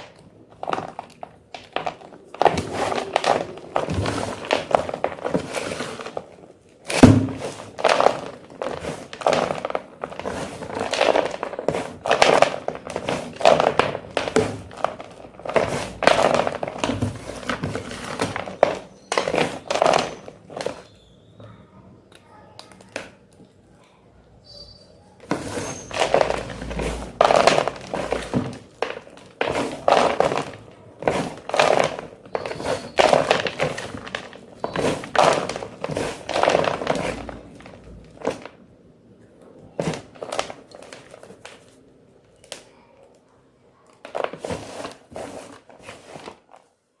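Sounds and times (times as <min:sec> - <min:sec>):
chalk crunching: 0:25.3 - 0:37.2.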